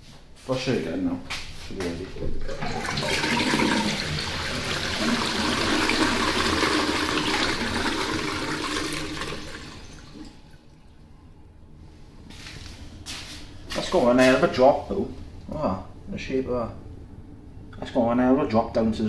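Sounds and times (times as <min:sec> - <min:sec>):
toilet flushing: 0:02.3 - 0:11.1.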